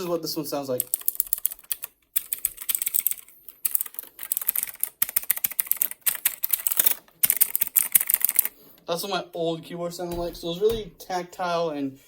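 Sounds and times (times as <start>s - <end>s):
fast typing on mechanical keyboard: 0.7s - 8.6s.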